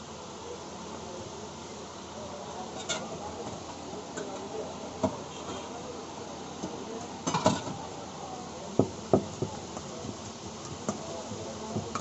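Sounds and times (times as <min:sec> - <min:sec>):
street background noise: 0:00.0 - 0:12.0
kitchen utensils knocking: 0:07.3 - 0:07.8, 0:11.7 - 0:12.0.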